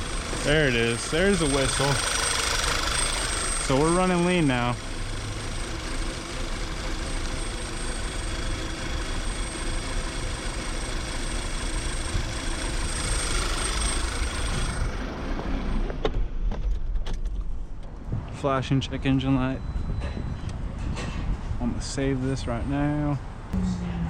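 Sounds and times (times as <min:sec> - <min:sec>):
car engine idling: 0:00.0 - 0:15.2.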